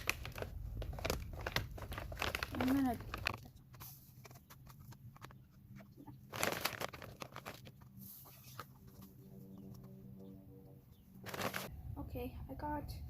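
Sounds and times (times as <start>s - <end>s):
seeds rattling: 0.0s - 3.7s, 6.2s - 8.6s, 11.2s - 11.7s
seed bag rustling: 0.0s - 5.3s, 6.1s - 9.1s, 11.2s - 11.7s.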